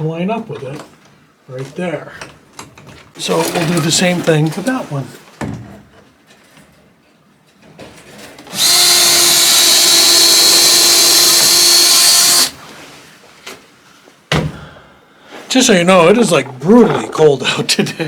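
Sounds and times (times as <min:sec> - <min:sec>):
power drill running: 0:08.5 - 0:12.6.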